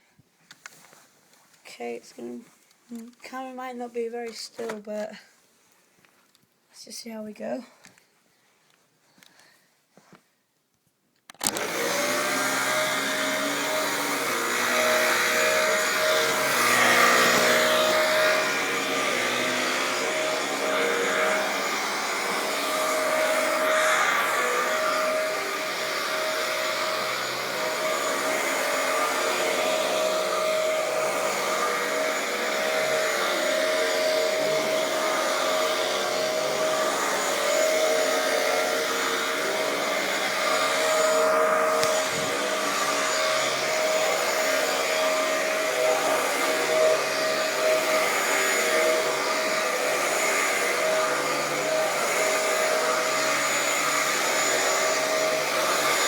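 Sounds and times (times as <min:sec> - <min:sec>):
vacuum cleaner on carpet: 0:11.4 - 0:56.0.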